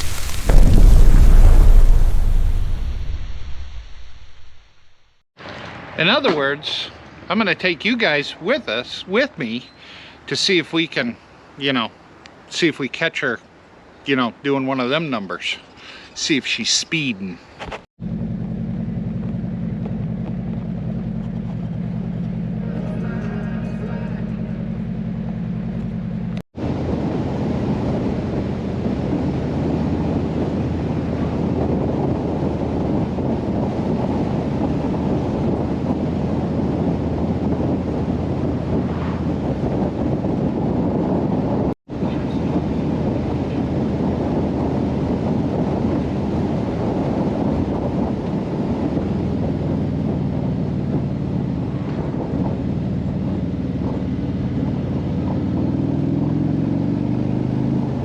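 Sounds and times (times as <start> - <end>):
wind rushing over microphone: 0.0 - 5.1, 26.6 - 55.6
motorcycle engine running: 18.0 - 22.9.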